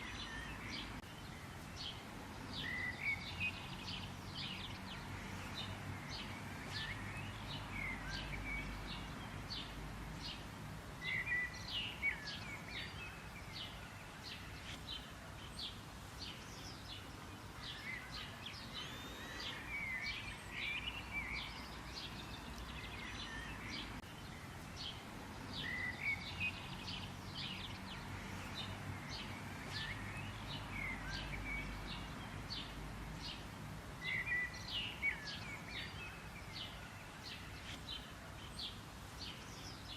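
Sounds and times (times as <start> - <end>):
small birds chirping: 0.0 - 39.9
steady low background noise: 0.0 - 39.9
warbled bird calls: 16.5 - 24.0.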